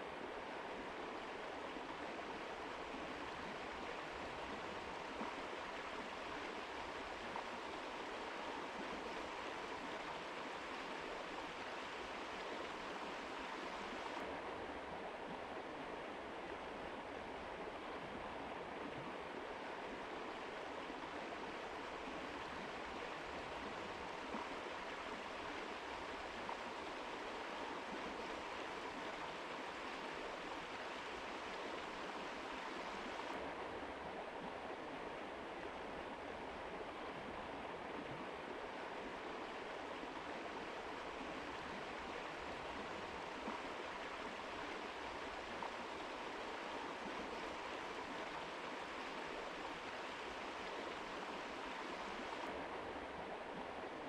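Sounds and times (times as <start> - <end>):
river rushing over rocks: 38.2 - 54.0.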